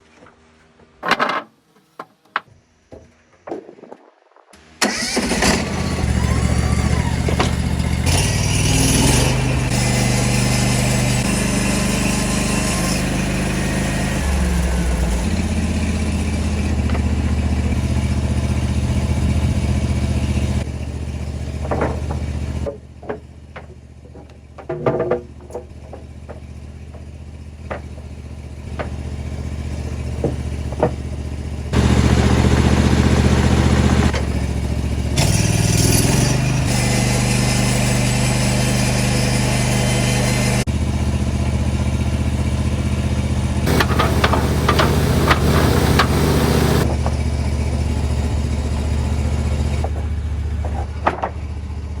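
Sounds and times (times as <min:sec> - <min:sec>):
gasoline engine running: 0:04.8 - 0:11.4, 0:12.3 - 0:22.7, 0:26.4 - 0:35.9, 0:40.6 - 0:51.7
band saw cutting wood: 0:04.8 - 0:16.8, 0:31.8 - 0:34.5, 0:35.2 - 0:40.6, 0:43.7 - 0:46.9.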